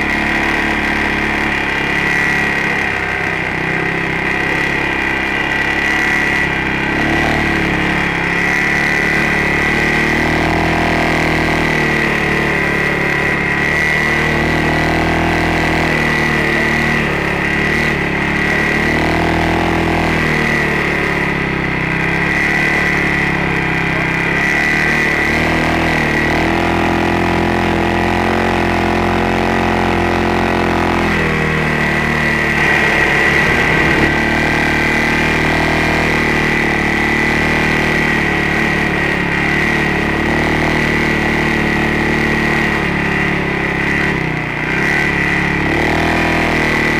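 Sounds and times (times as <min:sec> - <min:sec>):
steady high whine: 0:00.0 - 0:25.3, 0:30.4 - 0:39.2
atv engine revving: 0:00.0 - 0:46.9.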